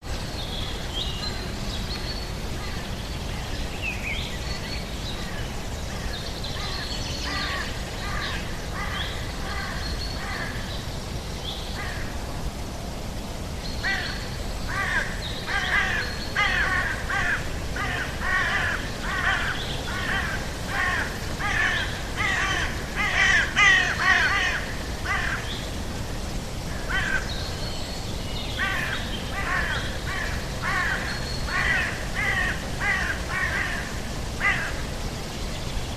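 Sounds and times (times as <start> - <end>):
harsh bird calls: 13.7 - 25.8.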